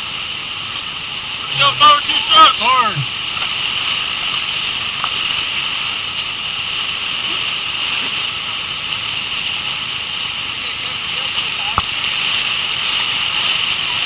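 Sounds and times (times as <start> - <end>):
whitewater rapids rushing: 0.1 - 14.0.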